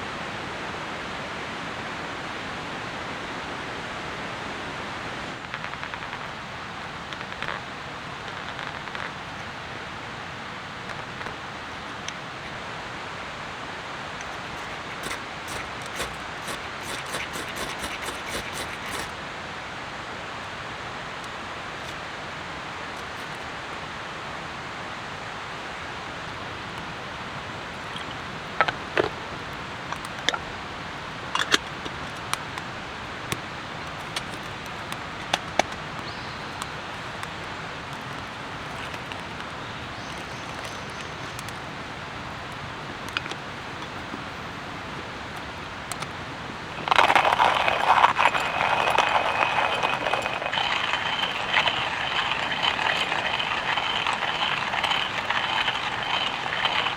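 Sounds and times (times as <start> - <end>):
sharp clicks and knocks: 14.2 - 19.2, 22.9 - 23.5, 27.7 - 30.6, 31.3 - 41.8, 42.4 - 44.4.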